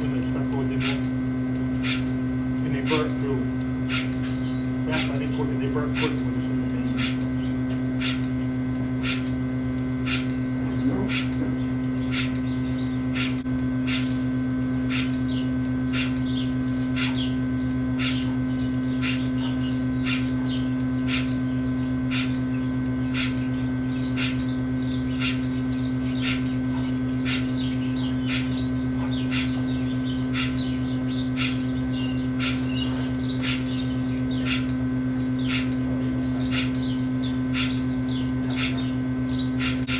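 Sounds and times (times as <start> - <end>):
low electrical hum: 0.0 - 39.9.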